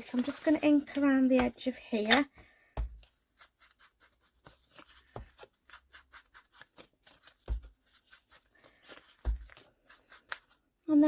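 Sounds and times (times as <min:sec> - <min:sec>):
scratchy rubbing on paper: 0:03.2 - 0:10.6.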